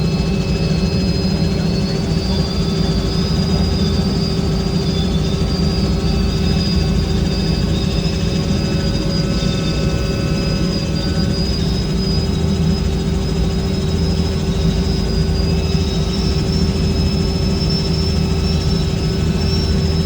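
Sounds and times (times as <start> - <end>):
helicopter engine and rotor drone: 0.0 - 20.0
high whine: 0.0 - 20.0.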